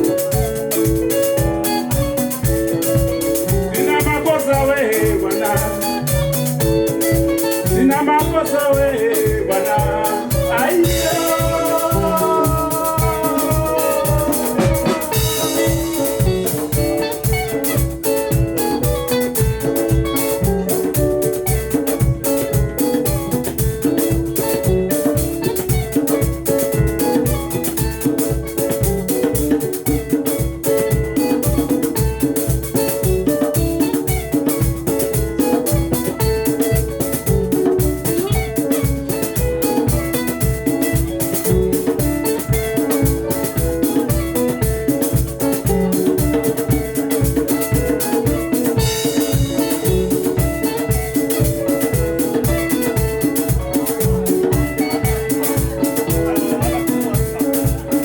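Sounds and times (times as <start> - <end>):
bass guitar: 0.0 - 58.0
drum kit beat: 0.0 - 58.0
interlocking guitar lines: 0.0 - 58.0.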